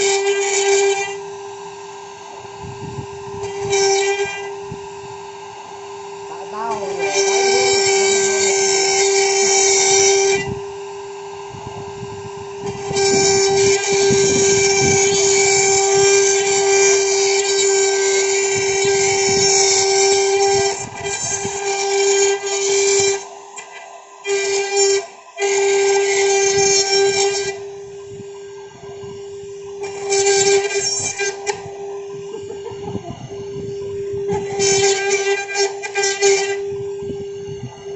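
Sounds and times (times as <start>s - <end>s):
loud hissing cutting noise: 0.0s - 37.9s
router spindle high whine: 0.0s - 37.9s.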